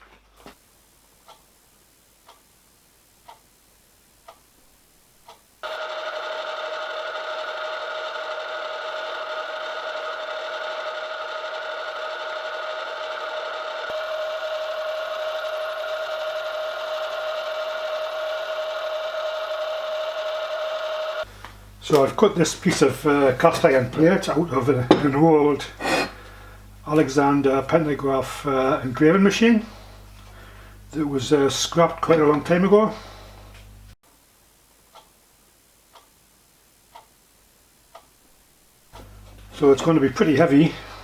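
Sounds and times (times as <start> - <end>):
faint ticks: 1.2 - 1.5, 2.2 - 2.5, 3.2 - 3.5, 4.2 - 4.4, 5.2 - 5.4, 34.9 - 35.2, 35.9 - 36.1, 36.9 - 37.1
machine whining: 5.6 - 21.3.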